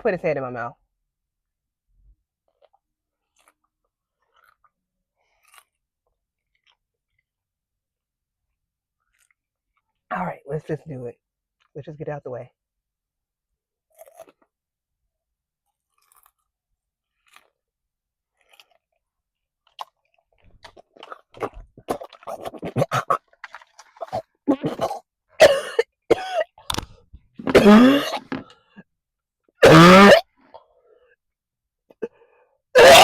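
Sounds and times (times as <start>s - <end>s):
person chewing with crisp crunching: 2.3s - 7.5s, 8.5s - 10.1s, 13.8s - 14.6s, 15.6s - 25.1s
person coughing and gagging: 22.3s - 23.3s, 24.0s - 26.6s, 27.4s - 28.5s, 29.6s - 30.3s, 32.8s - 33.0s.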